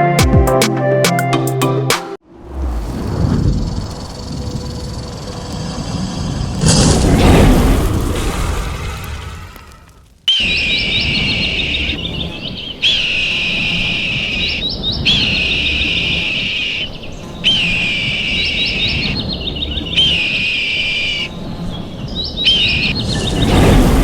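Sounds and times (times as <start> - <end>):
low rumble: 2.2 - 10.2, 22.6 - 24.0
bird-like chirping call: 10.3 - 23.4.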